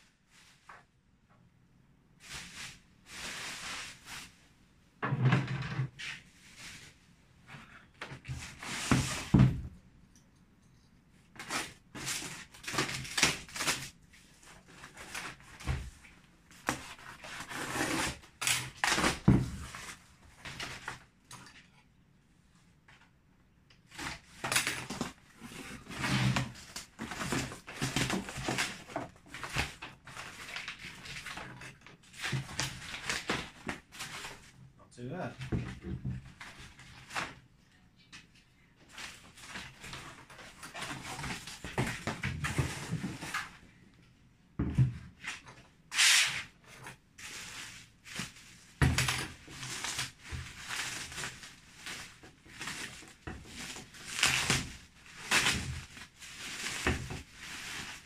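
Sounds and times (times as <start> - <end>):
box rustling and scraping: 24.1 - 34.3.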